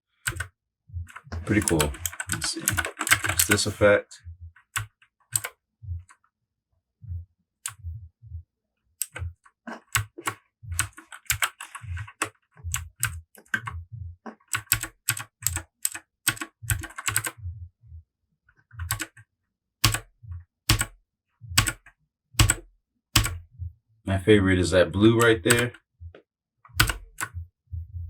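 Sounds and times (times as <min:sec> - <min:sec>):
mechanical keyboard clicking: 0:00.3 - 0:00.5, 0:01.1 - 0:03.7, 0:04.8 - 0:05.5, 0:10.0 - 0:13.7, 0:14.5 - 0:17.3, 0:18.8 - 0:19.2, 0:19.8 - 0:20.1, 0:20.7 - 0:20.9, 0:21.6 - 0:22.6, 0:23.2 - 0:23.4, 0:25.2 - 0:25.8, 0:26.8 - 0:27.3.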